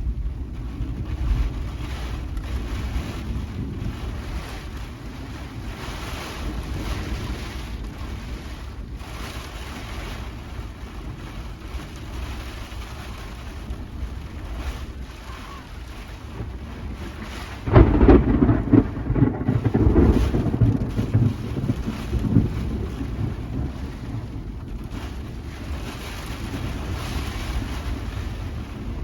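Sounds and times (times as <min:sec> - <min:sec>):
low thunder rumbling: 0:00.0 - 0:29.0
steady rain: 0:00.0 - 0:29.0
wind: 0:00.0 - 0:29.0
loud close thunderclap: 0:13.1 - 0:29.0.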